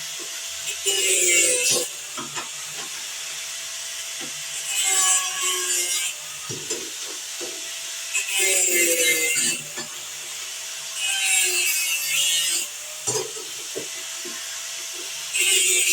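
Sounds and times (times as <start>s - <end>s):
grinder grinding metal: 0.0s - 15.9s.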